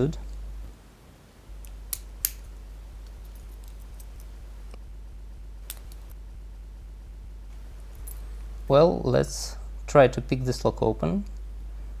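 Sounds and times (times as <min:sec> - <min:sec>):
low electrical hum: 0:00.0 - 0:12.0
padlock and key clicking: 0:01.6 - 0:04.4, 0:05.6 - 0:06.2.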